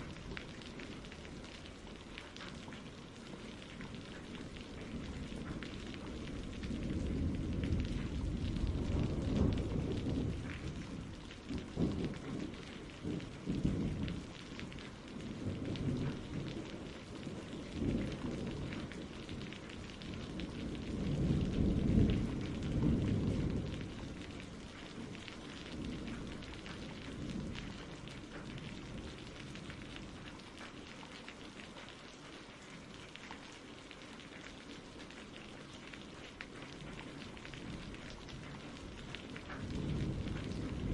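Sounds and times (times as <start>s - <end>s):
steady rain: 0.0s - 40.9s
low thunder rolling: 3.3s - 30.3s, 36.6s - 40.9s.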